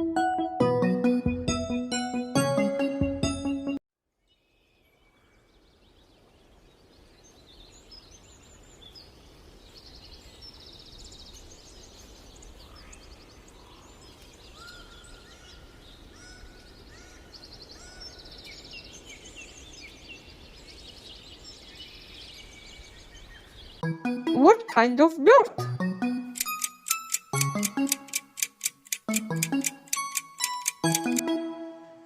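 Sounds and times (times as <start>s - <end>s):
birds chirping and trilling: 4.3s - 23.8s.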